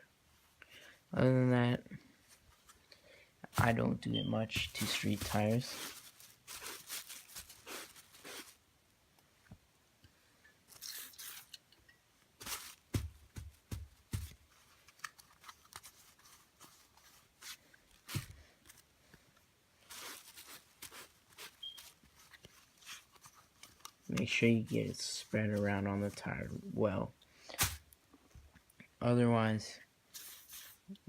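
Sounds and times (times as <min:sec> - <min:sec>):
rubbing and rustling: 0:03.5 - 0:08.6, 0:12.4 - 0:18.9, 0:19.8 - 0:26.6, 0:30.1 - 0:31.0.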